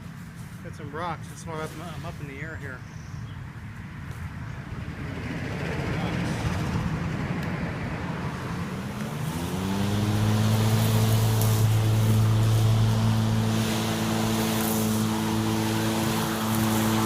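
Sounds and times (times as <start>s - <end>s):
lawn mower running: 8.5s - 17.0s.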